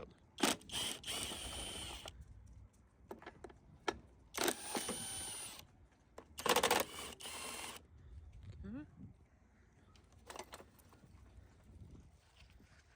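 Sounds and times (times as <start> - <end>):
tools scraping and rattling: 10.2 - 10.9.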